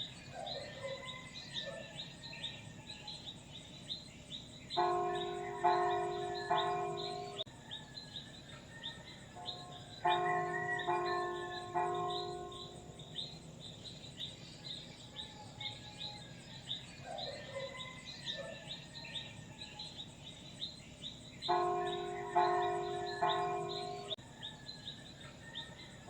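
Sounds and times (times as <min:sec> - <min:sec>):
birds chirping: 0:00.0 - 0:07.5, 0:09.0 - 0:24.2
church bell ringing: 0:04.8 - 0:07.5, 0:09.4 - 0:13.4, 0:21.5 - 0:24.2.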